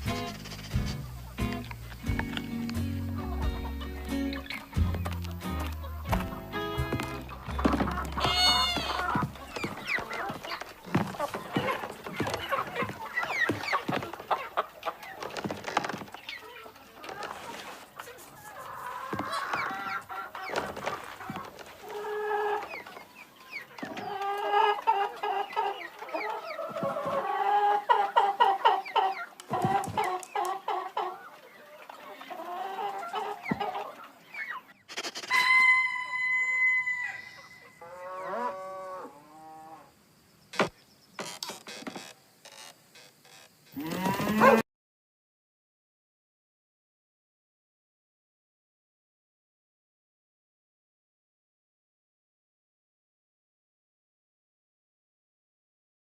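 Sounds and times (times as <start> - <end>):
chickens clucking: 0.0 - 39.3, 40.0 - 44.6
rooster-like crowing: 8.2 - 9.3, 35.3 - 39.1.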